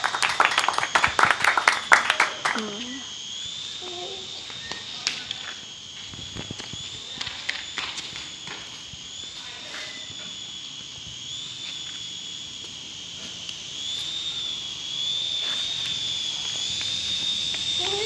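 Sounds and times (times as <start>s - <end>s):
toy helicopter motors whining: 0.0s - 18.0s.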